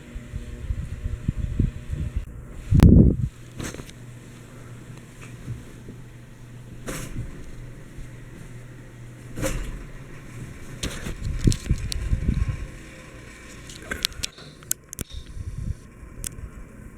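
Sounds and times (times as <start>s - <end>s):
ceiling fan motor hum: 0.0s - 16.9s
heavy rumbling thumps: 0.3s - 16.7s
sharp clicks: 13.6s - 15.4s.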